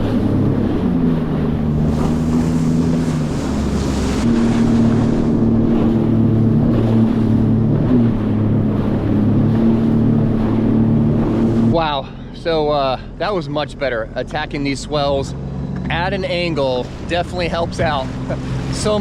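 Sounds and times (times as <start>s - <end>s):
wind buffeting microphone: 0.0s - 11.9s
jet ski engine running hard: 0.0s - 19.0s
water rushing past: 0.0s - 19.0s.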